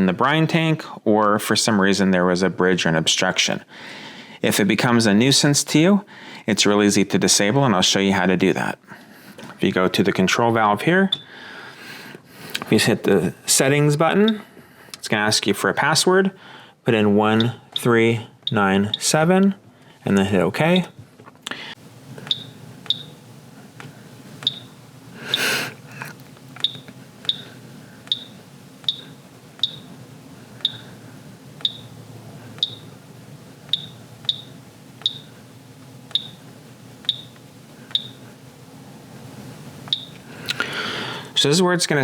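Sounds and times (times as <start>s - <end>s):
steady low hum: 0.0s - 42.0s
short high keypad beeps: 22.3s - 23.1s, 24.4s - 24.7s, 28.9s - 29.9s, 31.6s - 31.9s, 32.6s - 32.9s, 33.7s - 35.3s, 37.1s - 37.3s, 38.0s - 38.2s.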